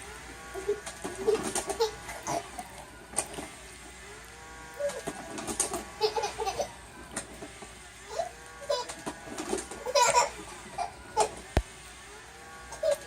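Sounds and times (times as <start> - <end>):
baby laughing: 0.5 - 2.7, 5.8 - 6.8, 8.1 - 9.0, 9.7 - 11.4, 12.7 - 13.0.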